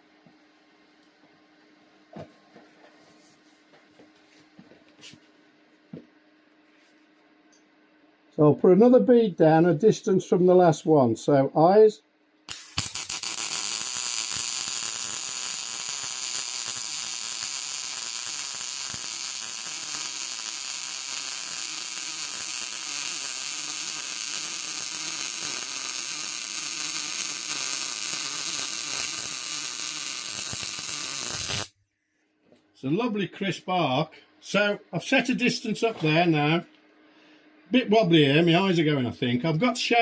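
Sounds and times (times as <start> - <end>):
welding arc crackling: 12.5 - 31.8.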